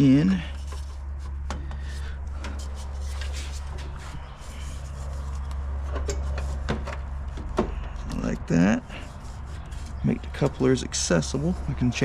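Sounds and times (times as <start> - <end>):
steady low hum: 0.0 - 12.0
knocks taps and scrapes of pipe: 5.4 - 8.3.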